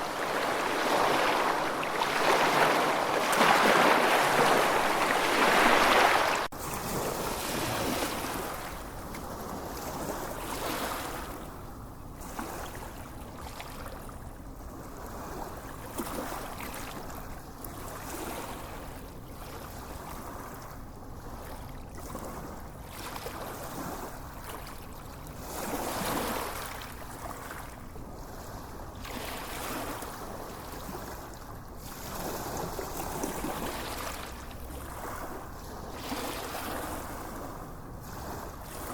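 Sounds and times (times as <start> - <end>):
waves washing onto sandy beach: 0.0 - 8.9.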